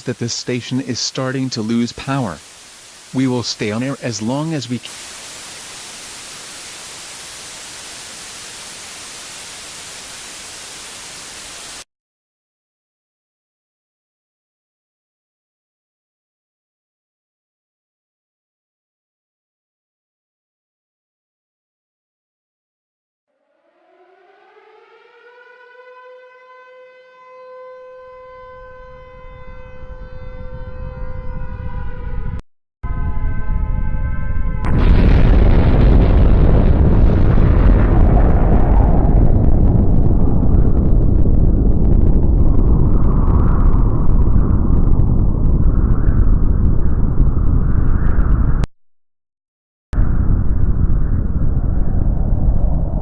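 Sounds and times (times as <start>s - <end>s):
white-noise static hiss: 0.0s - 11.8s
civil defense siren wailing: 23.3s - 34.7s
deep rumble: 30.6s - 48.7s, 50.0s - 53.0s.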